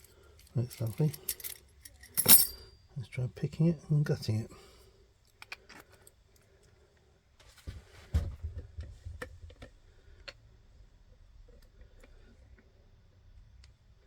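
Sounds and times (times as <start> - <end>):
small metal tools handled: 0.0 - 2.7.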